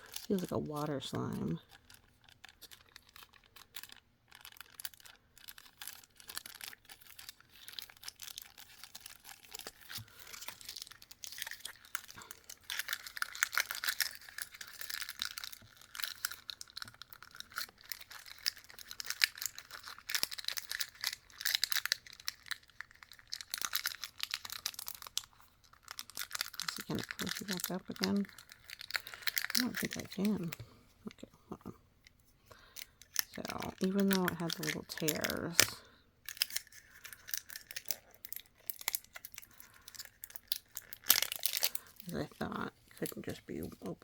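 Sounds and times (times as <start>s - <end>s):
plastic packaging crinkling: 0.0s - 44.0s.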